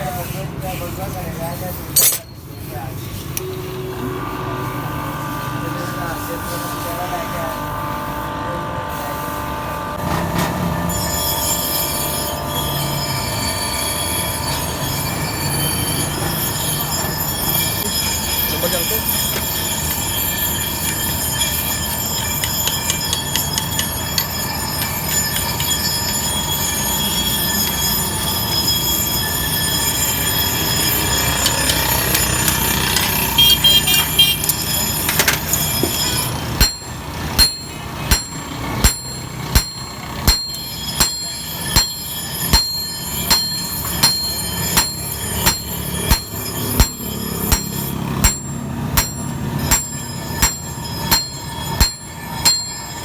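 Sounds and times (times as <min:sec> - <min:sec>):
machine noise: 0:03.1 - 0:53.0
high ringing tones: 0:10.6 - 0:53.0
hammer striking metal on anvil: 0:11.2 - 0:28.1, 0:29.1 - 0:53.0.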